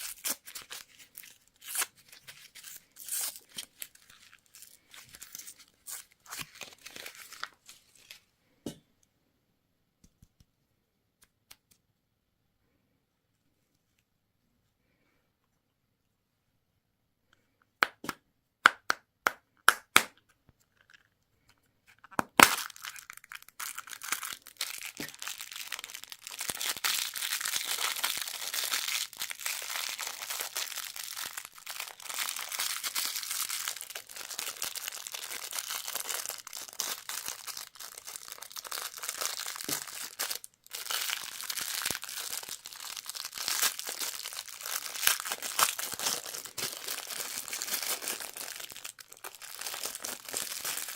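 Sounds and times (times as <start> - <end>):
candy wrapper crinkling: 0.0 - 8.2, 21.8 - 50.9.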